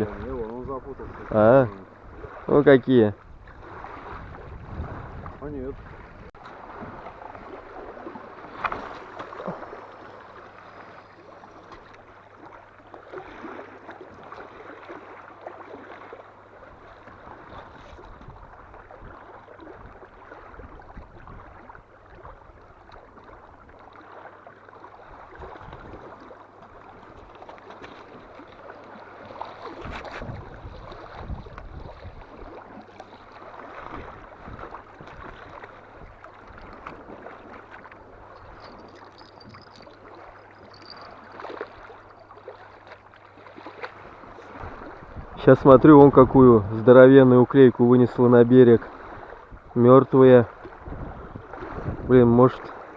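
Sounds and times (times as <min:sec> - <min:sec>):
strong wind: 0:00.0 - 0:07.0, 0:29.8 - 0:32.3, 0:44.6 - 0:52.9
waves washing onto shore: 0:00.0 - 0:52.9.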